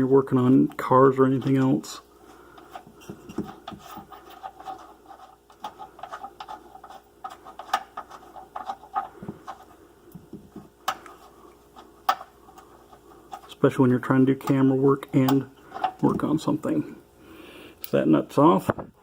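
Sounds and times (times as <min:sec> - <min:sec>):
metallic clicks and scrapes of nut: 0:02.5 - 0:09.7, 0:10.8 - 0:13.5, 0:15.6 - 0:16.0.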